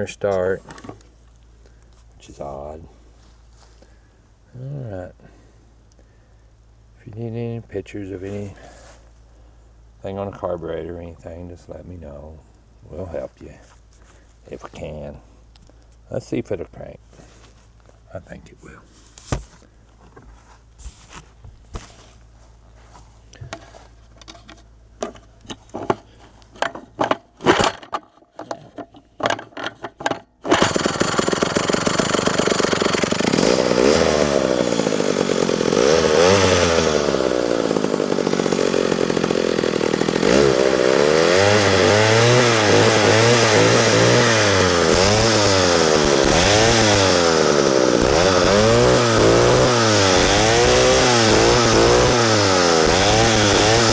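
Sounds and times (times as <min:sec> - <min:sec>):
chainsaw engine revving: 0:30.4 - 0:53.9.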